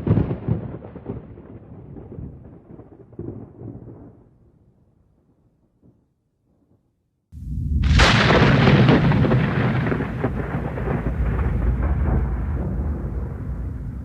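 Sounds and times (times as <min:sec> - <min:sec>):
thunder rumbling and cracking: 0:00.0 - 0:04.6, 0:07.4 - 0:14.0.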